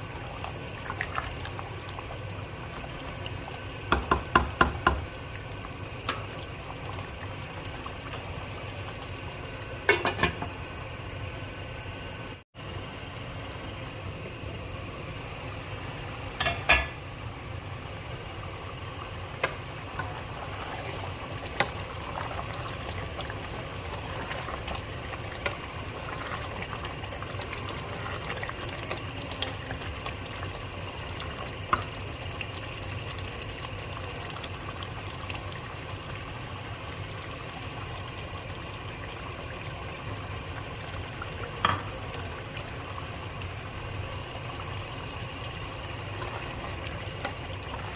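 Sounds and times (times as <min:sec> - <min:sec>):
curry sizzling and bubbling: 0:00.0 - 0:47.9.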